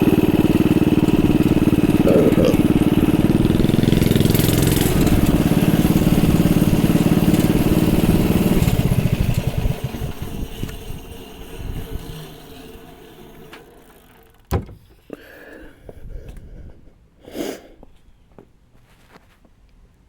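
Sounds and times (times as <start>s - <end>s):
small engine running: 0.0s - 15.2s.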